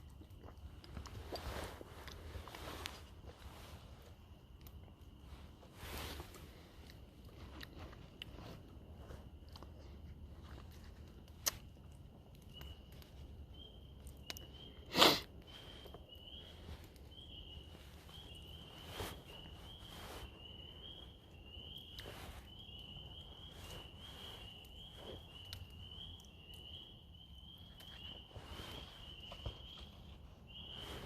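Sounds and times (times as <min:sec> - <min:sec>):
faint rustles: 0:00.0 - 0:31.0.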